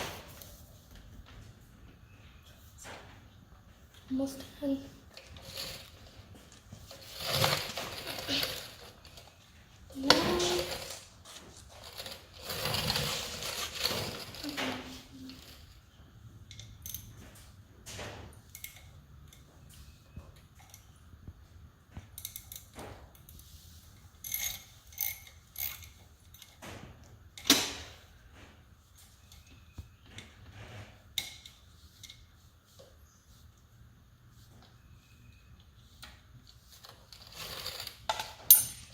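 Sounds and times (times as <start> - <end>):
metal hand tools clinking: 37.6 - 38.9.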